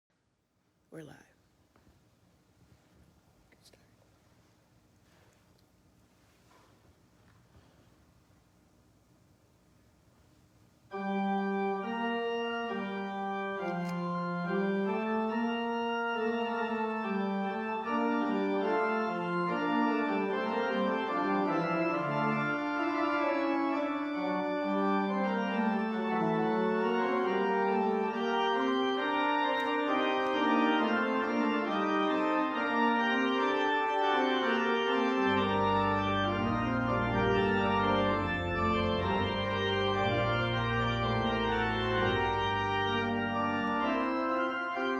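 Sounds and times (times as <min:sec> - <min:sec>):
deep organ pedal bass notes: 0:10.9 - 0:44.9
organ playing chords: 0:10.9 - 0:44.9.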